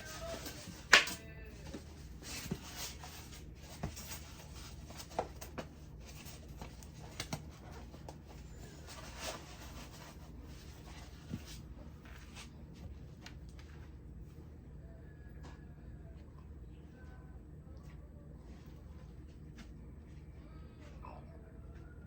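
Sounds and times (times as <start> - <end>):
rustling and brushing: 0.0 - 14.4
low steady hum: 0.0 - 22.0.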